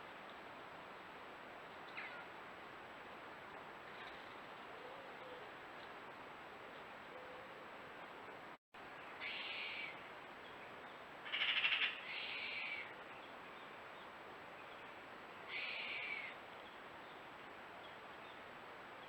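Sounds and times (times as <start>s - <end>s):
faint steady hiss: 0.0s - 19.0s
owl screeching: 9.2s - 9.9s, 11.3s - 12.9s, 15.5s - 16.3s.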